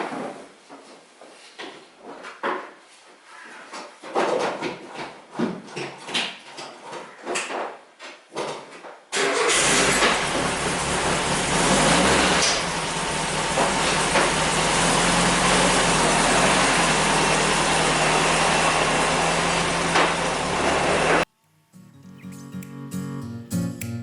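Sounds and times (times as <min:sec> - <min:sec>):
engine running steadily: 0:09.5 - 0:21.2.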